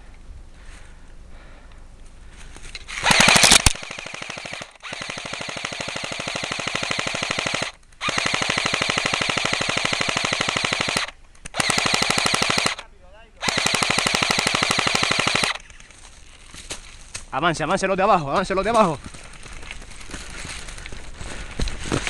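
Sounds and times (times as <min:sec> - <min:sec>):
airsoft guns firing bursts: 0:02.9 - 0:16.2.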